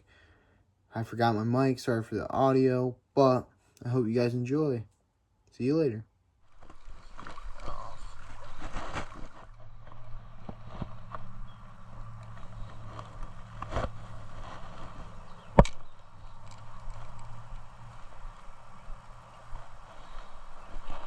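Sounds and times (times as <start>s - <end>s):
creek water rushing: 6.5s - 21.0s
low steady hum: 6.5s - 21.0s.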